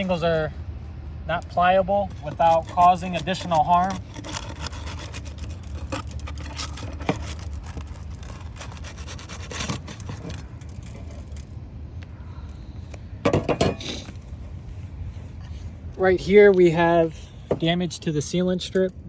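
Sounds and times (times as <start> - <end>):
roof shingles scraping and cracking: 1.6 - 11.5
shingles tearing: 2.0 - 11.5.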